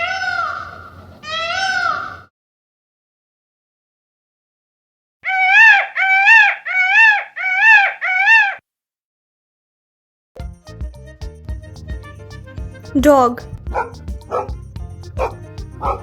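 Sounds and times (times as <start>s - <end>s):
peacock calling: 0.0s - 2.3s, 5.2s - 8.6s.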